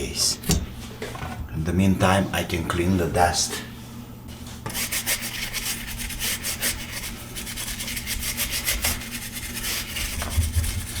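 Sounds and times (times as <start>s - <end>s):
brush scrubbing strokes: 4.7s - 11.0s.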